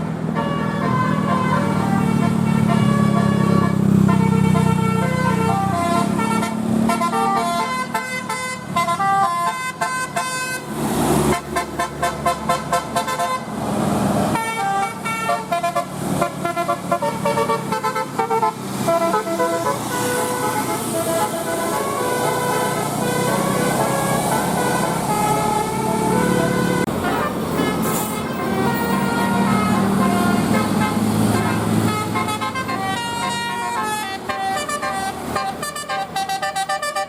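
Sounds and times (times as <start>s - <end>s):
multi-tone bus horn tune: 0.3s - 13.6s, 14.3s - 37.0s.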